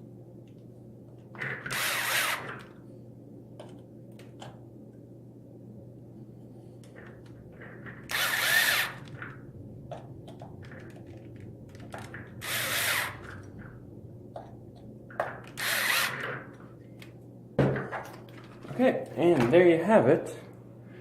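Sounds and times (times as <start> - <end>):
power screwdriver whirring: 1.6 - 2.6, 8.1 - 9.1, 12.4 - 13.4, 15.6 - 16.3.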